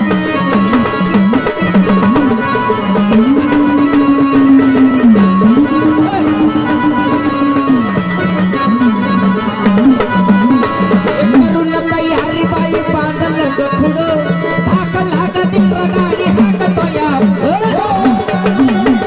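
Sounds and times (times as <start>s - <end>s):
hand drum with sliding pitch: 0.0s - 15.8s
low drone note: 2.0s - 9.8s.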